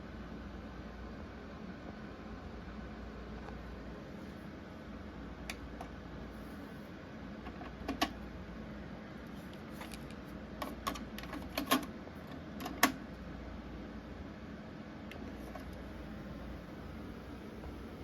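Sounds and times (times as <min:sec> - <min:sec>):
low hiss and hum: 0:00.0 - 0:18.0
cassette deck keys clicking: 0:09.9 - 0:11.9, 0:12.6 - 0:13.0.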